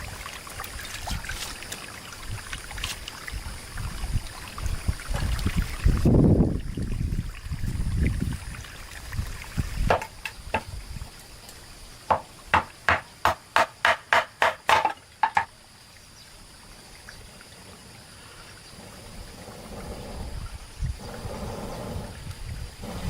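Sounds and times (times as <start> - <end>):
faint steady hiss: 0.0 - 23.0
sharp knocks: 9.9 - 10.7, 12.1 - 15.5.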